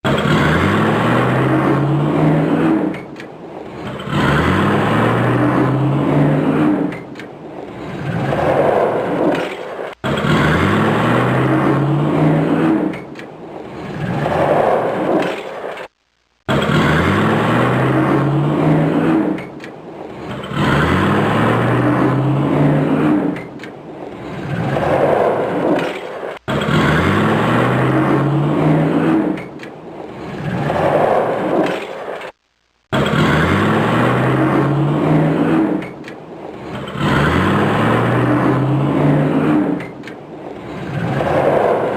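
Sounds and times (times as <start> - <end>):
car engine accelerating hard: 0.0 - 15.2, 16.5 - 29.6, 33.0 - 41.9.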